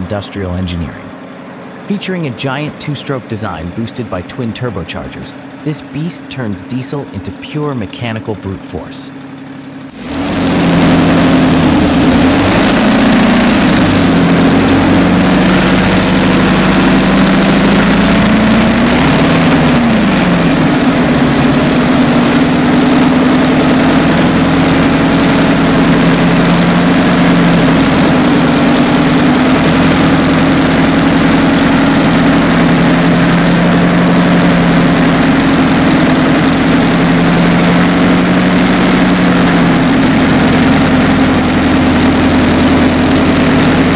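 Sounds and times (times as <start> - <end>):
diesel engine idling and revving: 9.1 - 43.9.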